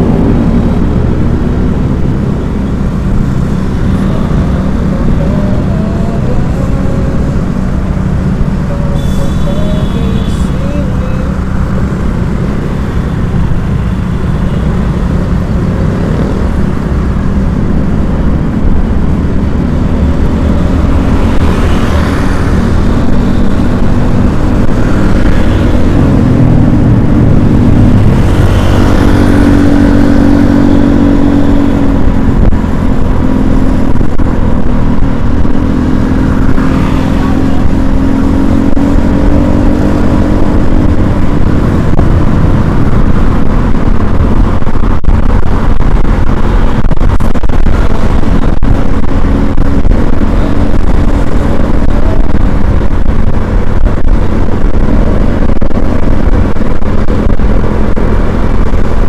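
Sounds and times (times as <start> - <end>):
vehicle engine: 0.0 - 59.0
wind buffeting microphone: 14.9 - 59.0.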